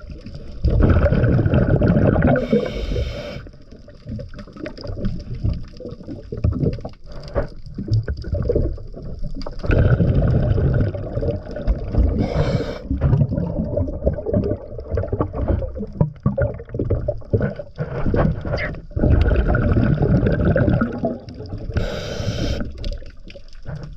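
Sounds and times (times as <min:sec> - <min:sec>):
water churning: 0:00.0 - 0:03.2, 0:08.2 - 0:23.9
bubbles gurgling: 0:00.0 - 0:23.9
diver breathing through regulator: 0:02.4 - 0:03.6, 0:12.2 - 0:13.0, 0:21.8 - 0:22.8.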